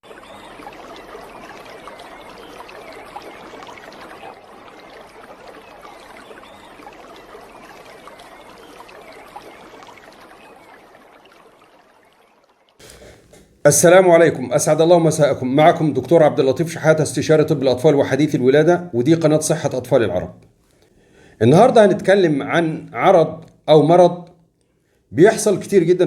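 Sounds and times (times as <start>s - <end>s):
trickling running water: 0.0s - 12.8s.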